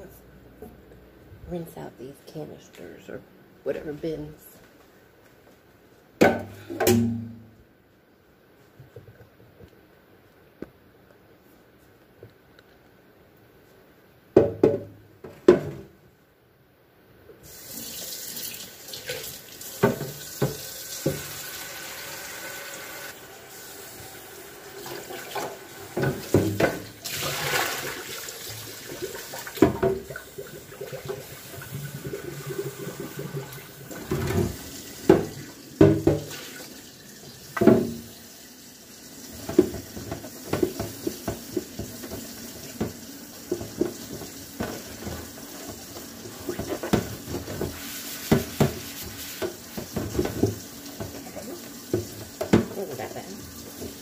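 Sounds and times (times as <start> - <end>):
plastic bins knocking and clunking: 6.2 - 7.6, 14.3 - 16.0, 25.9 - 27.6, 29.6 - 30.2, 33.9 - 36.4, 37.6 - 38.1, 39.3 - 51.3, 51.9 - 53.0
tap running into a sink: 17.9 - 21.6, 33.9 - 36.5, 37.5 - 38.2, 39.3 - 54.0.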